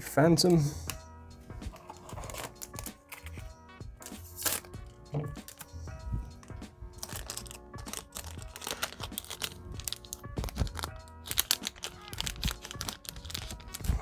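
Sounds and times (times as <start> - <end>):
background music: 0.0 - 14.0
plastic wrapper crinkling: 1.8 - 3.4, 4.0 - 5.8, 6.4 - 14.0.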